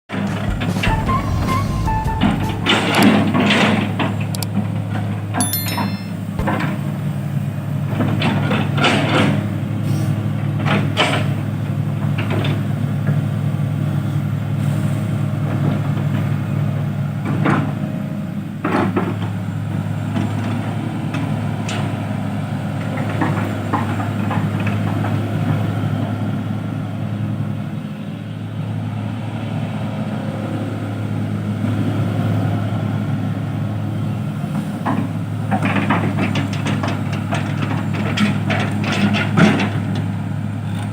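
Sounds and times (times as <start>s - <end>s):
diesel engine running: 0.1s - 5.3s.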